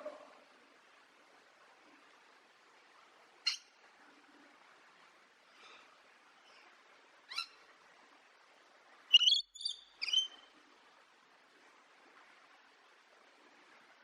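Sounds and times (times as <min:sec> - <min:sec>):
parrot calling: 0:09.1 - 0:10.4.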